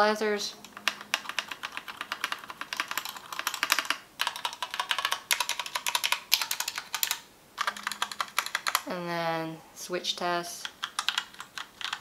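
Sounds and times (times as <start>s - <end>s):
mechanical keyboard clacking: 0.6s - 8.9s, 10.6s - 12.0s.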